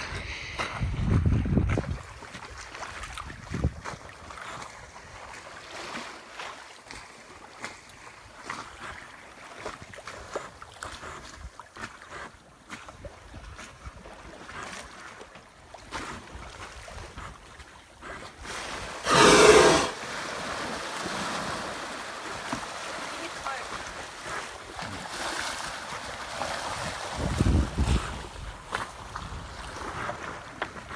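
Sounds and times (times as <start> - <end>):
whale blowing: 0.0 - 1.1, 18.4 - 20.1
wind on microphone: 0.0 - 5.3, 26.6 - 30.9.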